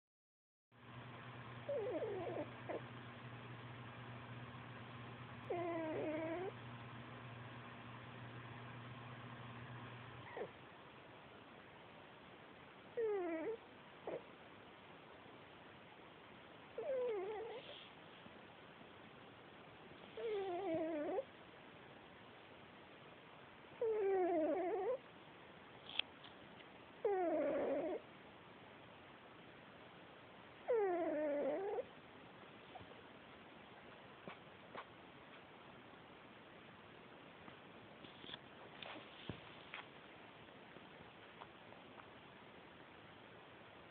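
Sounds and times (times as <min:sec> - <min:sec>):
cat snoring: 0:01.6 - 0:02.9, 0:05.4 - 0:06.6, 0:10.2 - 0:10.5, 0:13.0 - 0:14.2, 0:16.8 - 0:17.9, 0:20.2 - 0:21.3, 0:23.8 - 0:25.0, 0:27.0 - 0:28.0, 0:30.7 - 0:31.9.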